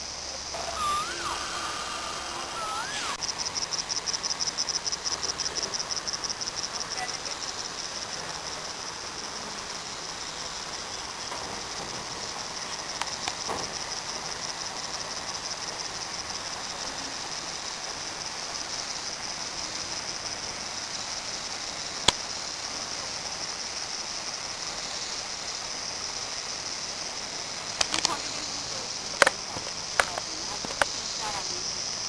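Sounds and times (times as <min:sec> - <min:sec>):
insects chirring: 0:00.0 - 0:32.0
sharp clicks: 0:00.6 - 0:03.2, 0:27.8 - 0:28.2, 0:29.2 - 0:31.0.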